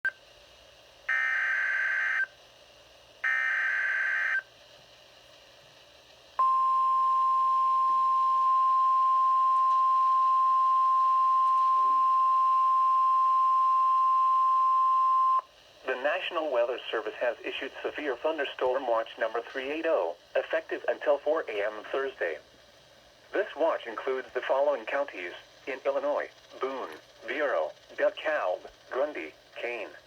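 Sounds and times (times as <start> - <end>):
steady alarm tone: 1.1 - 2.3, 3.2 - 4.4, 6.4 - 15.4.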